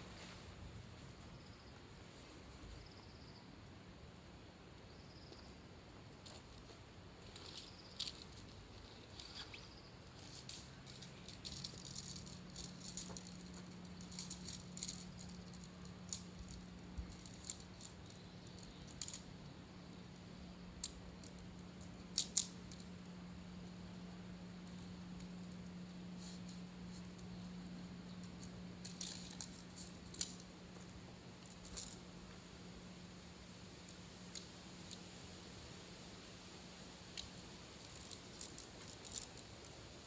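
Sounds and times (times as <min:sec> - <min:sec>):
faint low hum: 0:00.0 - 0:40.0
small objects clicking and rattling: 0:06.2 - 0:19.5, 0:20.7 - 0:23.1, 0:28.1 - 0:32.1, 0:37.1 - 0:39.8.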